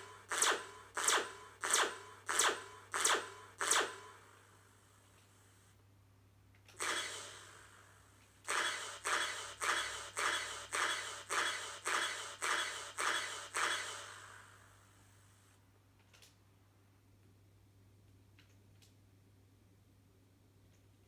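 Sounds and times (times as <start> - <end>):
laser shot sound effect: 0.0 - 4.3, 6.8 - 7.8, 8.4 - 14.7.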